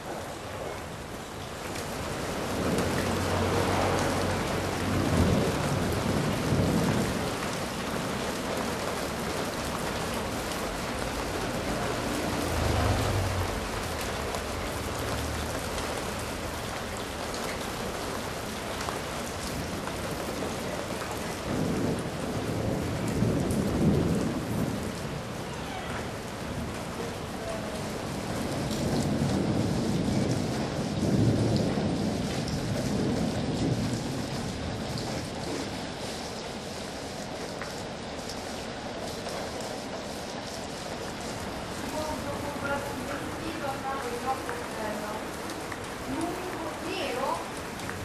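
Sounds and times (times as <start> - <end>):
heavy rain falling: 0.0 - 48.0
thunder rumbling: 2.0 - 35.7.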